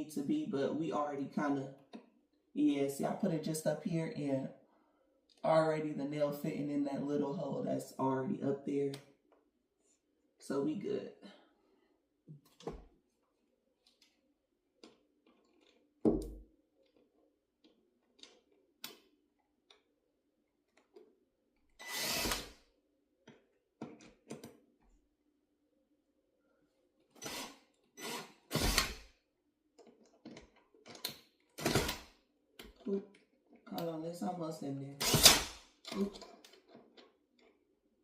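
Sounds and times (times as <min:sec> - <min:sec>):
drill driving screw: 0:21.8 - 0:22.6, 0:27.2 - 0:29.0, 0:31.6 - 0:32.1, 0:35.0 - 0:35.6
clicks and knocks of handling: 0:23.2 - 0:24.6, 0:29.8 - 0:31.6, 0:35.8 - 0:37.6.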